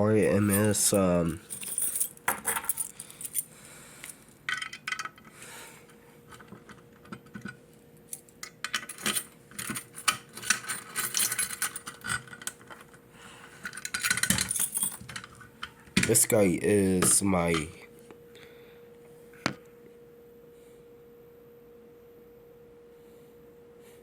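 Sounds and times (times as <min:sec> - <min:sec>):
metallic clicks and rattles: 0:08.4 - 0:13.0, 0:13.6 - 0:16.4.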